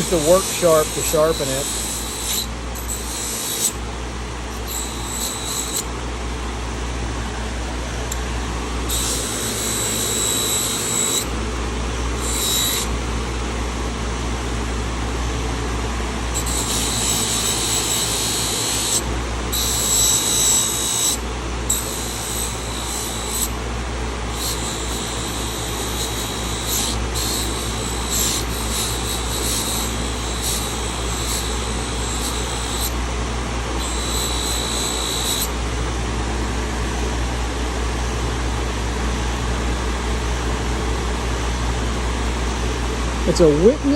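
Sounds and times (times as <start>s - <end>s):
knife grinding on belt: 0.0s - 3.8s, 24.4s - 32.9s
belt sharpener motor hum: 0.0s - 5.9s, 8.0s - 11.4s, 12.0s - 13.1s, 16.2s - 35.7s.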